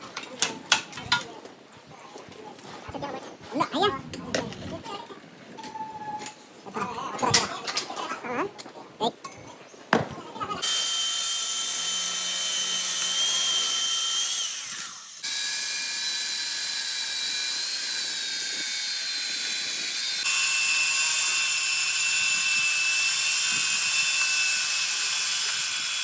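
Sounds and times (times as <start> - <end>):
concrete cutting machine whining: 10.6 - 26.0.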